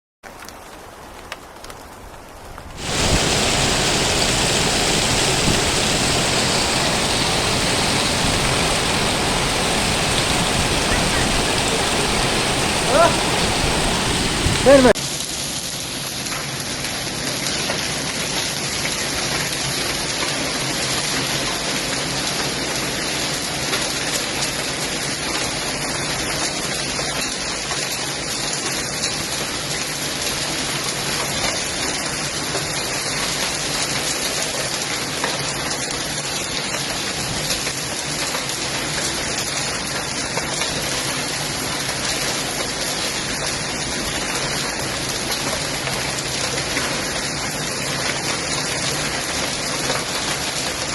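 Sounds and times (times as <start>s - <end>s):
heavy rain falling: 2.7s - 50.9s.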